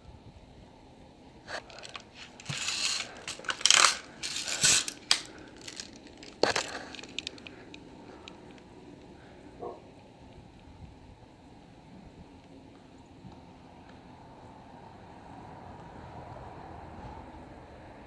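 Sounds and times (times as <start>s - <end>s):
light metallic rattling: 1.5s - 8.6s
bb gun clicks: 1.7s - 8.6s.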